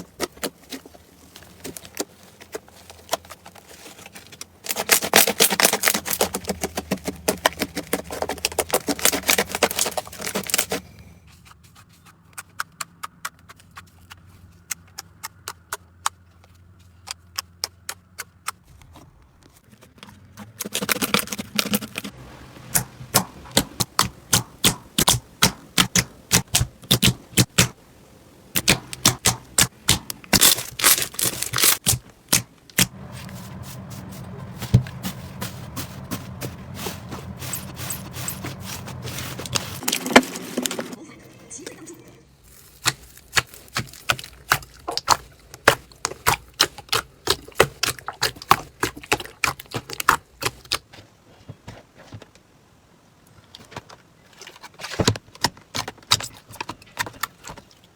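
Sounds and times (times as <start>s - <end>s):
slime crackling and popping: 4.6s - 10.8s, 20.3s - 27.8s, 28.5s - 33.0s, 42.5s - 50.8s.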